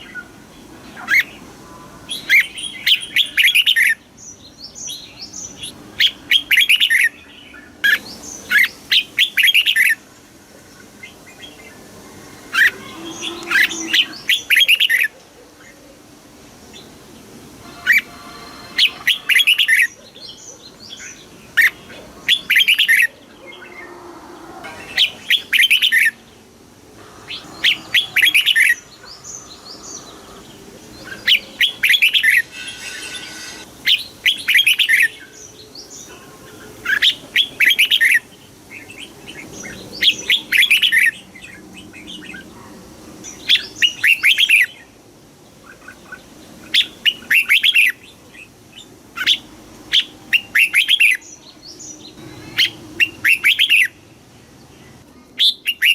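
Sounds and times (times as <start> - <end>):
bird singing rapid chirps: 17.6 - 24.0, 27.1 - 35.6, 49.2 - 54.0.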